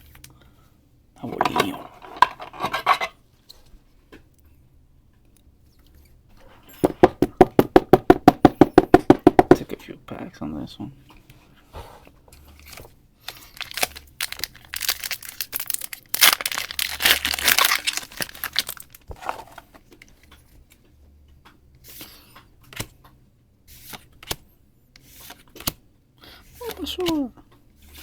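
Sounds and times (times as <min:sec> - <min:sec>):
foil pack tearing and crinkling: 0:13.2 - 0:19.0.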